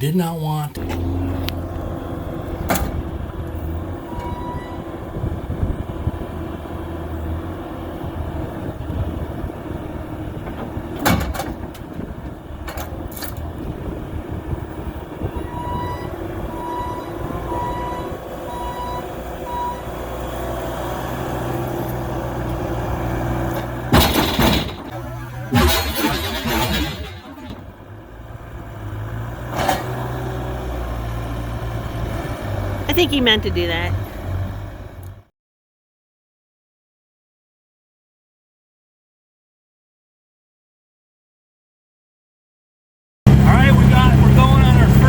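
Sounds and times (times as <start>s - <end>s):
vehicle engine running: 0.6s - 4.0s, 43.3s - 45.0s
vehicle engine rattling rumble: 0.7s - 35.2s, 43.3s - 45.0s.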